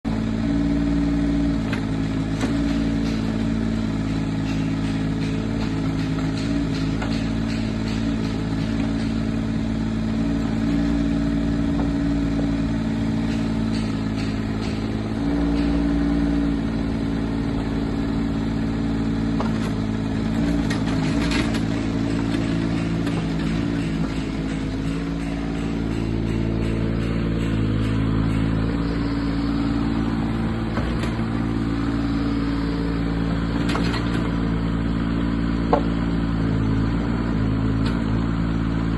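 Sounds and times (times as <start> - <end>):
small diesel engine running: 0.0 - 38.9
clicks and knocks: 20.4 - 32.3.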